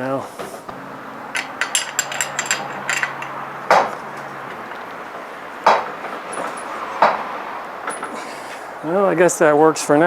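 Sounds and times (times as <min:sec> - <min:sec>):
wrench clanking on metal: 0:00.7 - 0:08.7.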